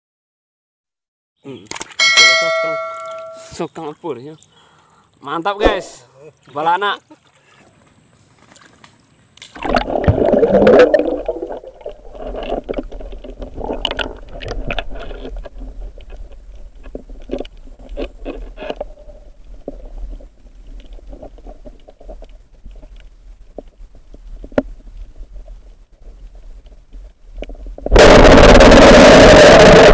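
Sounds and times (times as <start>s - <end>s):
loud splash: 9.5s - 12.2s
low underwater rumble: 9.6s - 29.9s
underwater bubbling: 9.6s - 29.9s.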